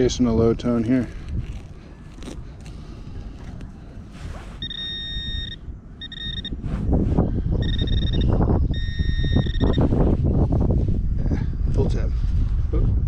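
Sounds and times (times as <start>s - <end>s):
dirt being dug and scraped: 0.0s - 4.9s
metal detector beeping: 4.6s - 6.6s, 7.6s - 9.9s.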